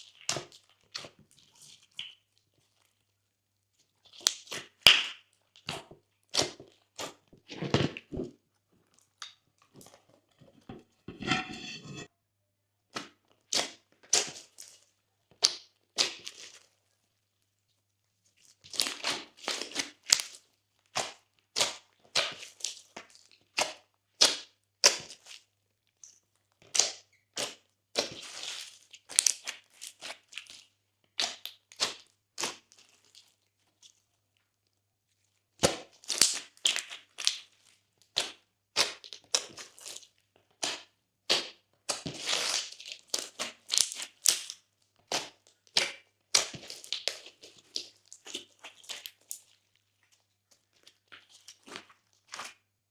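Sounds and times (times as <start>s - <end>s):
slime crackling and popping: 41.9s - 49.5s.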